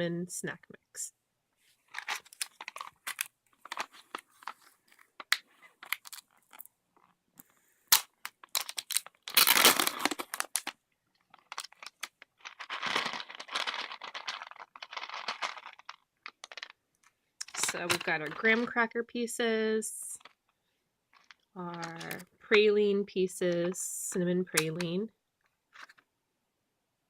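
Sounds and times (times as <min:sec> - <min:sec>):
packaging rustling: 0:01.8 - 0:07.2, 0:07.9 - 0:16.8
plastic packet crinkling: 0:01.9 - 0:07.1, 0:07.9 - 0:16.8, 0:21.2 - 0:22.2
packet tearing: 0:05.8 - 0:06.6, 0:07.9 - 0:10.7, 0:11.3 - 0:16.7.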